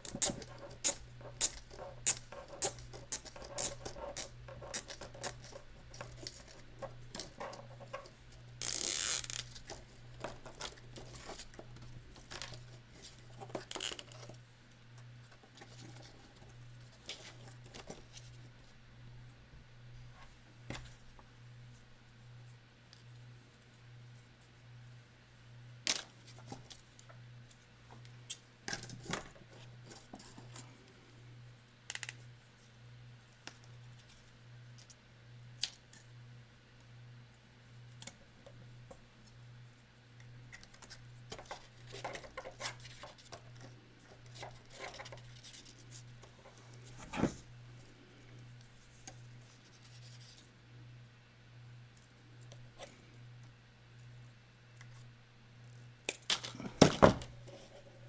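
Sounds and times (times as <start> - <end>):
wire clicks snips and scratches: 0.0 - 5.5, 8.6 - 9.5, 13.7 - 14.2.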